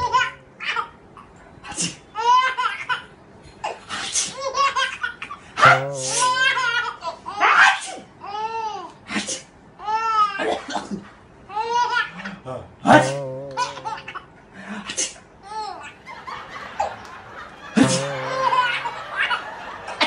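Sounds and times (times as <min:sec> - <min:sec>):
baby laughing: 0:05.6 - 0:06.9, 0:12.9 - 0:14.2, 0:16.0 - 0:20.0.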